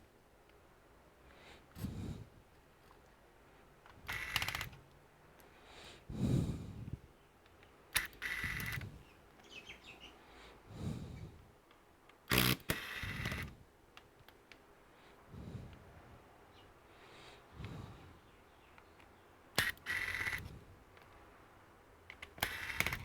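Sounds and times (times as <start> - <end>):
fine clicking: 22.1 - 23.0.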